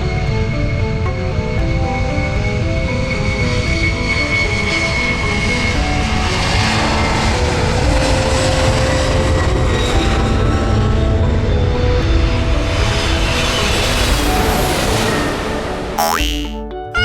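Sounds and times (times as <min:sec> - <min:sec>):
background music: 0:13.6 - 0:17.0.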